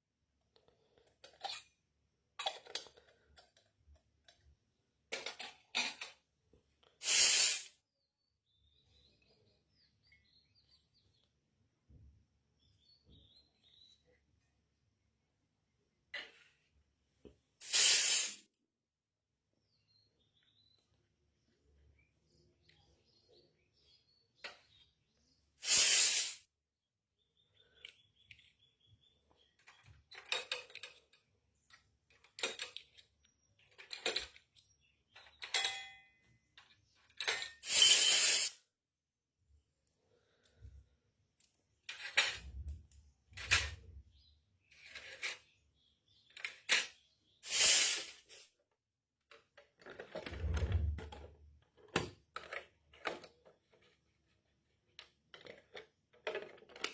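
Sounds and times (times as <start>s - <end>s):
tiny pots and utensils clinking: 1.1s - 4.5s, 35.2s - 38.6s.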